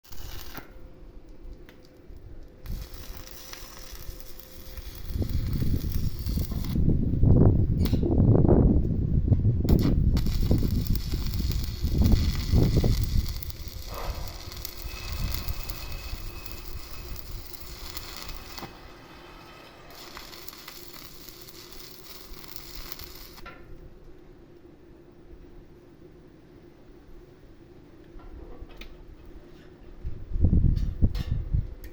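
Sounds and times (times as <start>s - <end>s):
welding arc crackling and sizzling: 0.0s - 8.1s, 9.6s - 23.5s.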